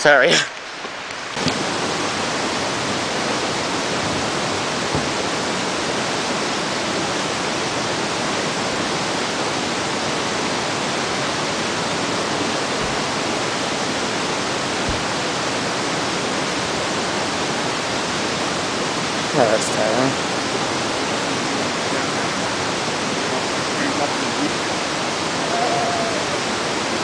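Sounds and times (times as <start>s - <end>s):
waterfall rushing: 0.0s - 27.0s
faint low bumps: 2.9s - 6.0s, 12.4s - 15.8s.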